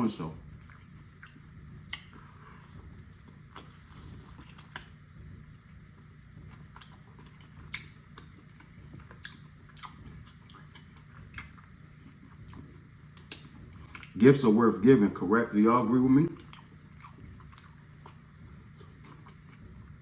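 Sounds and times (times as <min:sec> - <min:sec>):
chewing ribs: 0:00.2 - 0:20.0
mouth clicks and smacks: 0:06.8 - 0:08.4, 0:12.5 - 0:14.2.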